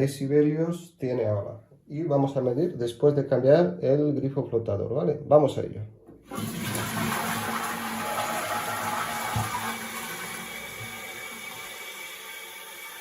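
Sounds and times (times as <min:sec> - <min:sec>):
toilet flushing: 0:06.2 - 0:13.0
cistern refilling with rushing water: 0:06.3 - 0:13.0.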